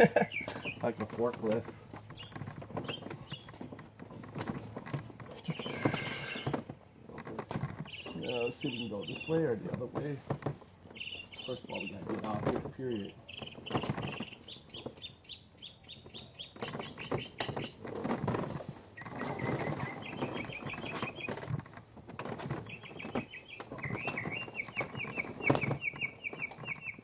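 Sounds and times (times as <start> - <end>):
songbird chirping rapidly: 0.0 - 3.8, 5.3 - 6.6, 7.8 - 9.8, 10.8 - 17.8, 19.0 - 21.5, 22.4 - 27.0
knocks and scuffs: 0.3 - 15.0.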